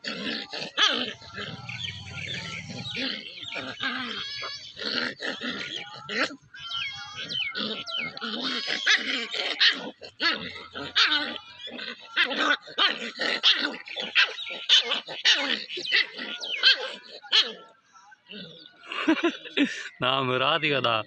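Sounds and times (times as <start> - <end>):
puppy barking: 0.1 - 6.4, 7.2 - 17.7.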